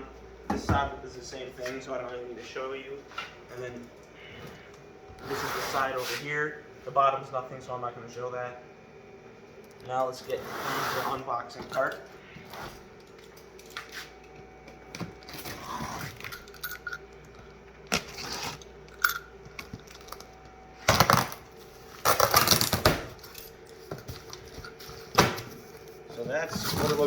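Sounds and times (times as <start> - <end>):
cardboard rustling and scraping: 26.1 - 27.0.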